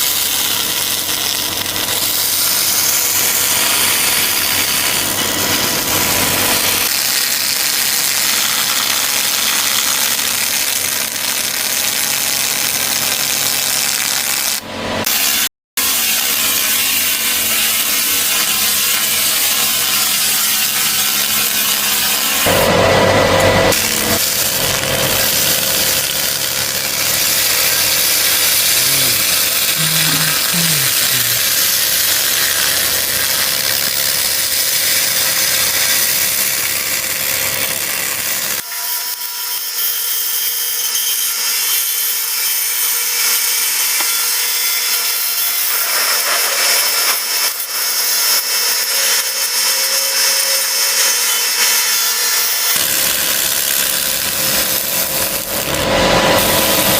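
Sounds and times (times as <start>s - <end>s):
laser cleaning machine hissing: 16.2s - 34.2s, 52.7s - 56.9s.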